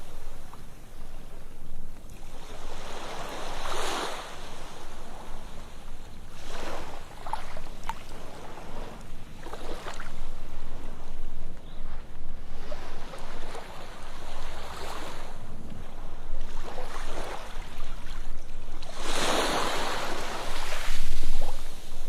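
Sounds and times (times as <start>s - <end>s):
ocean surf on a beach: 2.3s - 11.9s, 18.9s - 22.0s.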